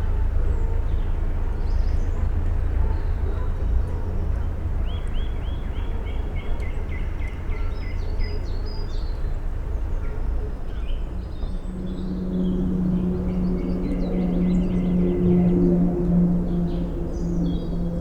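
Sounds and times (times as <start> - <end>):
steady low hum: 11.0 - 18.0
steady low rumble: 11.0 - 18.0.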